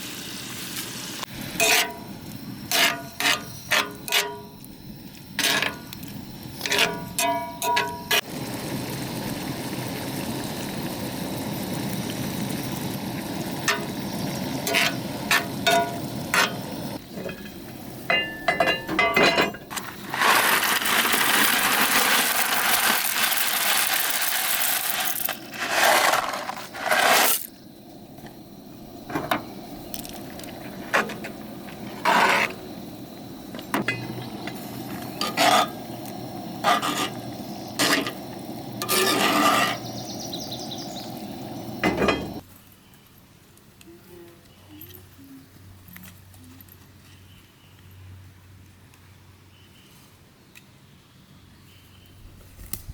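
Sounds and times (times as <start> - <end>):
food sizzling in a pan: 0.0 - 4.6, 5.4 - 17.4, 19.8 - 26.2, 31.8 - 42.4
metal utensils scraping a pan: 1.6 - 2.1, 2.7 - 4.6, 5.4 - 5.9, 6.6 - 8.2, 14.6 - 27.5, 31.9 - 32.6, 35.1 - 35.8, 36.6 - 38.2, 38.8 - 40.0.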